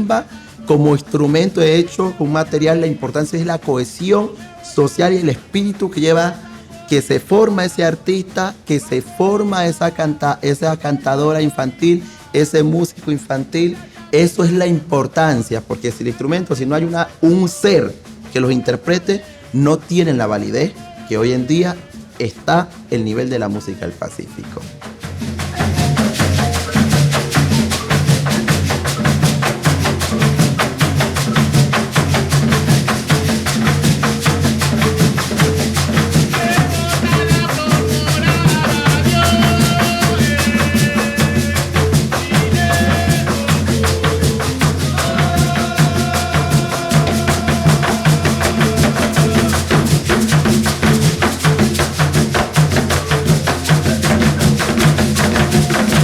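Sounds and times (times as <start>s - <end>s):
drums and shakers rhythm: 0.0s - 56.0s
voices singing: 0.0s - 56.0s
marimba notes: 16.4s - 56.0s.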